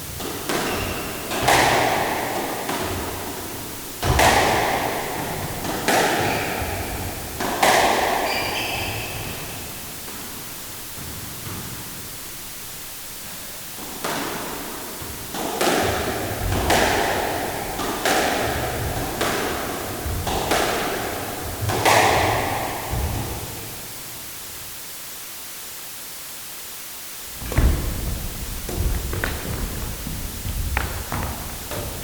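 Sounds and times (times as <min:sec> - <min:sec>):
ball impacts echoing in a gym: 0:00.0 - 0:24.7, 0:27.2 - 0:32.0
high squeak: 0:08.2 - 0:09.8.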